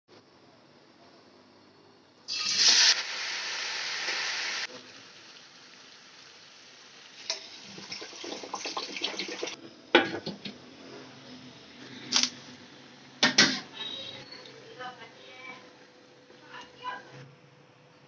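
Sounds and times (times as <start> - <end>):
loud sizzling hiss: 2.3 - 9.6.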